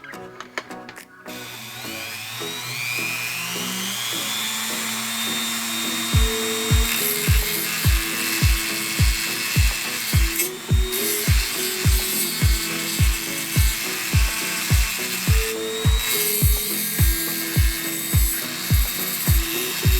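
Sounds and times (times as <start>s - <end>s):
rotary tool whining buzz: 1.3s - 19.9s
music with thumping beat: 5.6s - 19.9s.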